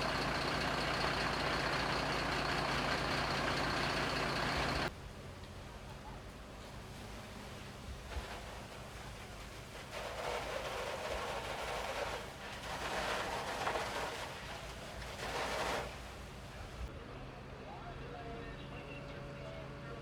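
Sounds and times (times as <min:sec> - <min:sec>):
fire engines humming: 0:00.0 - 0:13.2, 0:14.0 - 0:20.0.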